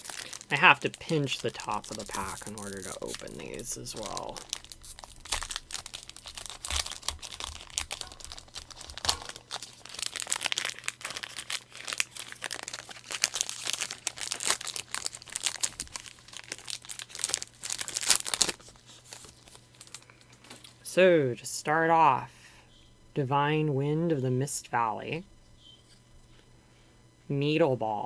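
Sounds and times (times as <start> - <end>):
foil wrapper crinkling: 0.0 - 20.8
faint low hum: 0.0 - 28.0.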